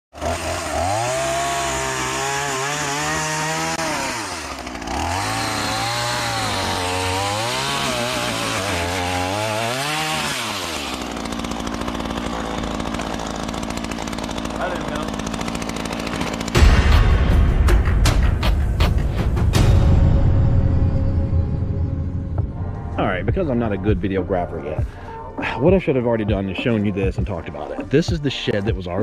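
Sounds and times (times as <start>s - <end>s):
chainsaw engine revving and idling: 0.1s - 17.1s.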